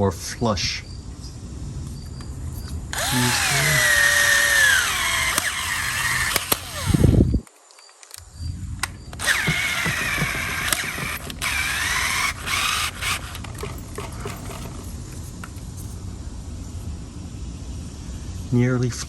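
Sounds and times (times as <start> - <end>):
cordless drill motor whining: 2.9 - 7.4, 9.1 - 15.2.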